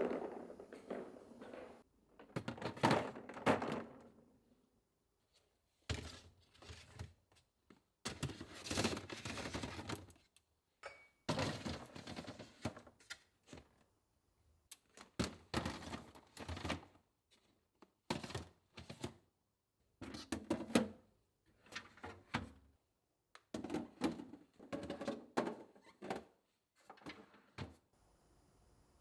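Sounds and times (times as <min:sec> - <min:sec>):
objects knocked and set down: 0:00.0 - 0:04.1.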